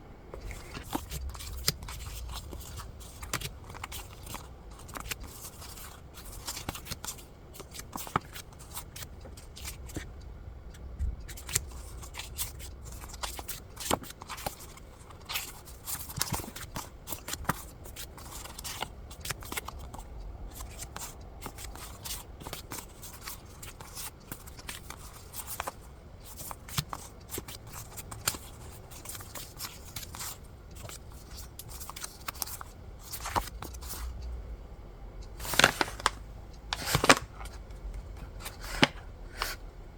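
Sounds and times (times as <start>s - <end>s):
paper rustling and flicking: 35.4s - 37.5s.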